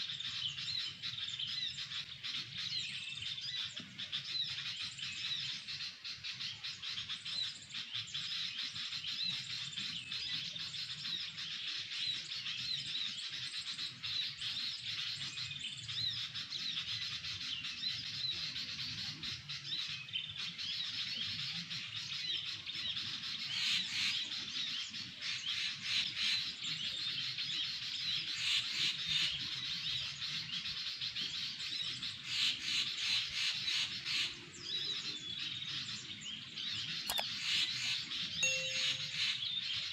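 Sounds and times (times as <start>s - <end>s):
birds twittering: 31.9s - 39.9s.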